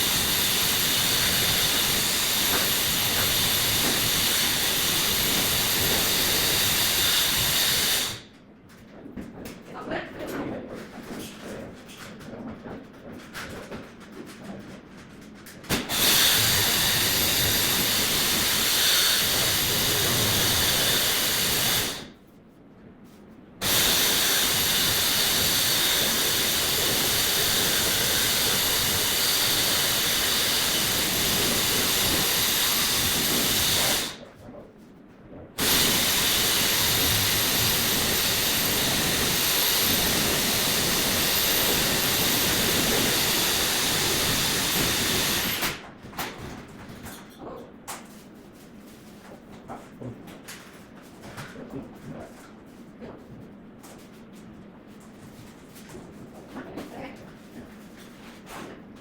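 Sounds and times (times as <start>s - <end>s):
pressurised gas hissing: 0.0s - 8.2s, 15.7s - 22.1s, 23.6s - 34.2s, 35.6s - 45.8s.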